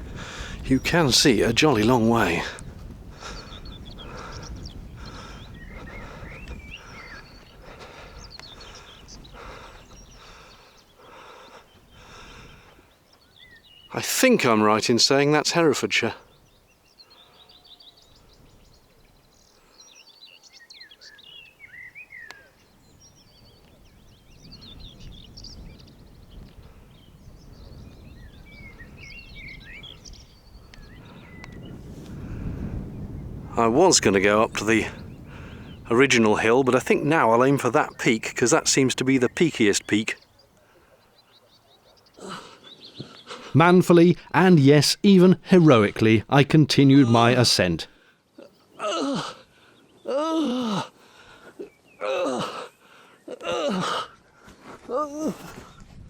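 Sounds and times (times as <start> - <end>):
wind rumbling on microphone: 0.0 - 10.7, 11.7 - 13.7, 17.9 - 19.4, 22.8 - 37.1, 55.5 - 56.0
birds chirping: 0.0 - 54.3
person breathing hard: 0.1 - 0.6, 3.1 - 12.8.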